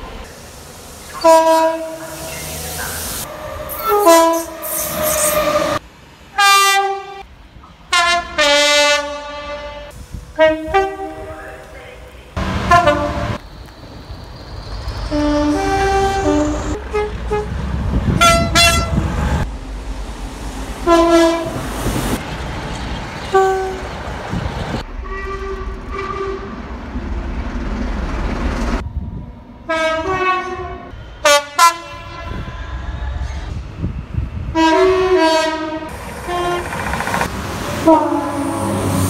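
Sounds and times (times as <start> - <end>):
train rumble: 0.0 - 39.0
two-tone train horn blasts: 1.2 - 2.2, 3.4 - 5.8, 6.4 - 7.3, 7.9 - 11.4, 12.6 - 13.4, 15.1 - 17.6, 18.2 - 19.0, 20.8 - 21.6, 23.3 - 23.8, 25.0 - 26.6, 29.7 - 32.5, 34.5 - 36.8, 37.8 - 38.9.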